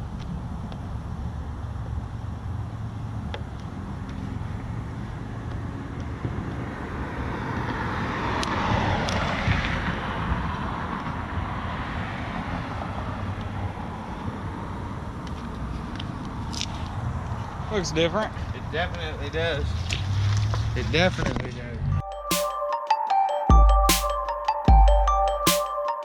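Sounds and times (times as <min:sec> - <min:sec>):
steady outdoor rumble: 0:00.0 - 0:21.9
car passing by: 0:02.9 - 0:22.0.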